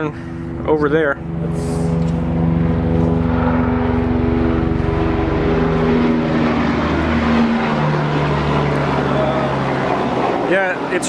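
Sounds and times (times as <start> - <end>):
motor engine running: 0.0 - 11.0.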